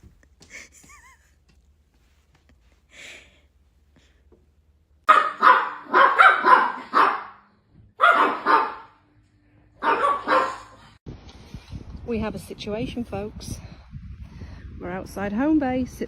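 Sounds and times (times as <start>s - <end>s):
dog barking: 5.1s - 7.4s, 8.0s - 9.0s, 9.8s - 11.0s.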